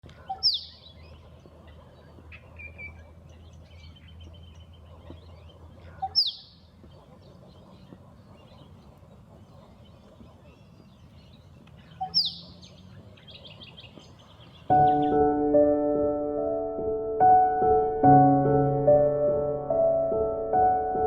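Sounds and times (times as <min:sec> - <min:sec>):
small birds chirping: 0:00.0 - 0:15.2.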